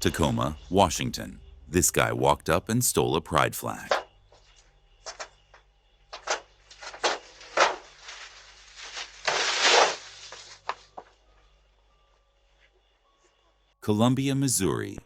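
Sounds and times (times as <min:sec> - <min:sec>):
low electrical hum: 0:00.0 - 0:15.0
rustling: 0:06.1 - 0:11.2.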